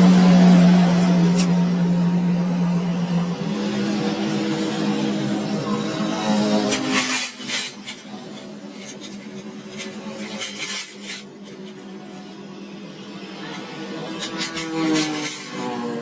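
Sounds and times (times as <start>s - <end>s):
metal tools clinking and scraping: 5.8s - 11.8s, 14.2s - 15.9s.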